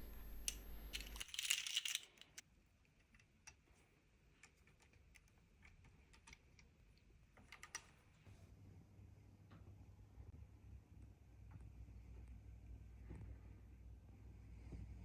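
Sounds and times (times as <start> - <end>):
plastic toy bricks clicking: 0.5 - 2.4.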